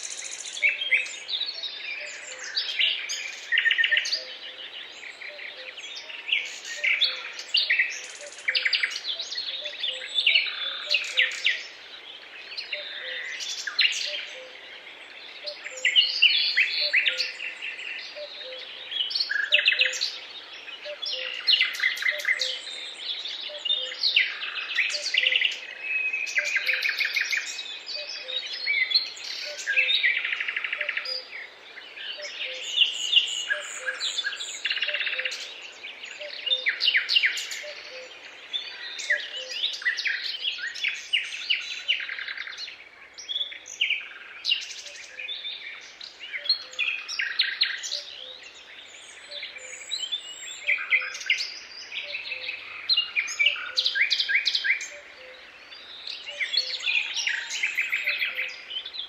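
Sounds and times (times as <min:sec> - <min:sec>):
songbirds chirping and trilling: 0:00.0 - 0:59.0.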